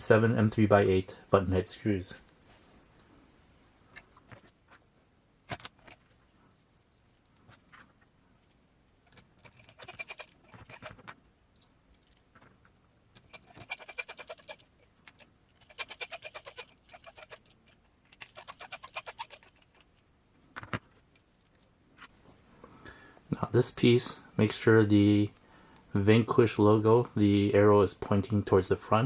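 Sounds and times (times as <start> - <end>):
screwdriver rapid ticking: 9.4 - 10.9, 13.2 - 20.0.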